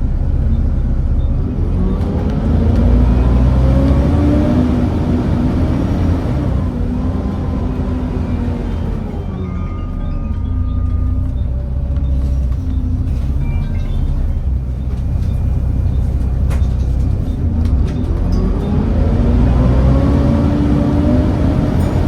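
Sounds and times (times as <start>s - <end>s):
bus diesel engine rumbling: 0.0s - 22.0s.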